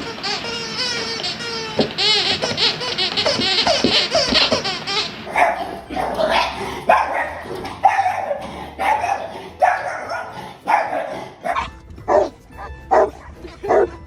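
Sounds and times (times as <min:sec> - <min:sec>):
dog barking: 0:05.3 - 0:14.0.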